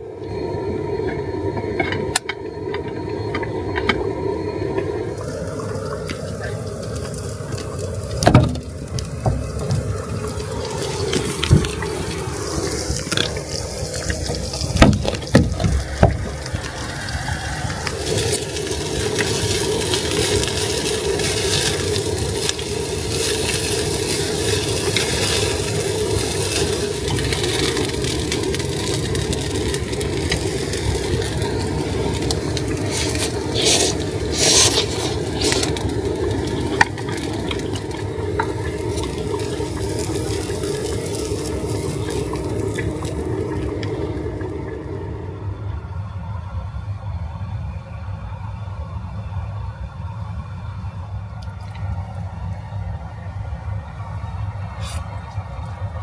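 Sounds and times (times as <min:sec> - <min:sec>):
food sizzling in a frying pan: 0:02.6 - 0:44.7
stirring scrapes and clicks: 0:32.3 - 0:39.3.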